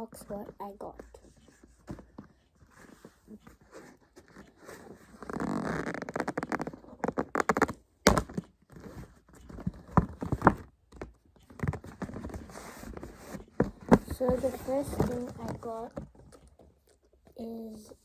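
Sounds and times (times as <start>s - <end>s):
boxes clicking and knocking: 6.6s - 16.7s.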